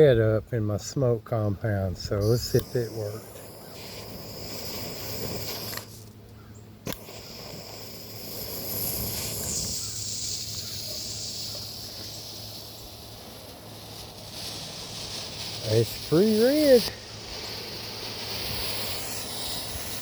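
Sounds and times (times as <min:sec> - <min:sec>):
smoke grenade hissing: 0:02.1 - 0:06.2, 0:06.8 - 0:20.0
sharp click: 0:05.7 - 0:07.0.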